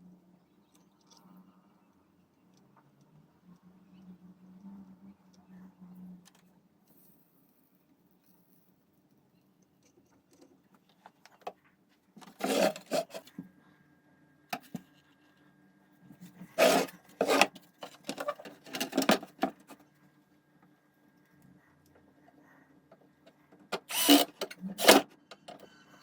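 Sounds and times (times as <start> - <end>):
plastic and metal parts clattering: 12.2 - 13.3, 16.6 - 19.8, 23.6 - 25.6.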